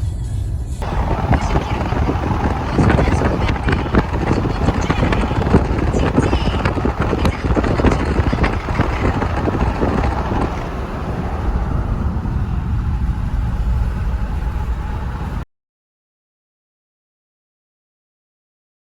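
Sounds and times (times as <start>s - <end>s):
car road and engine rumble: 0.8s - 15.4s.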